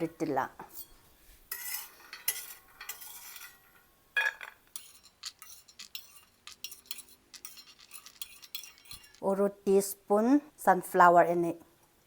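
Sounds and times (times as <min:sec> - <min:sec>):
metal spoon scraping a pan: 0:00.7 - 0:03.9, 0:04.6 - 0:09.4.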